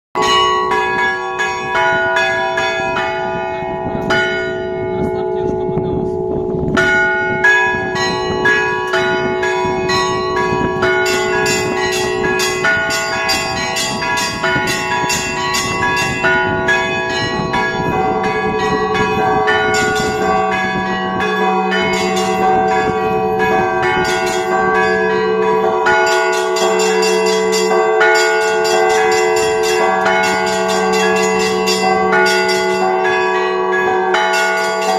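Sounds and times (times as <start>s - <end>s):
deep bell ringing: 0.2s - 34.9s
larger bells ringing: 0.2s - 34.9s
small high bells struck quickly: 9.9s - 34.9s.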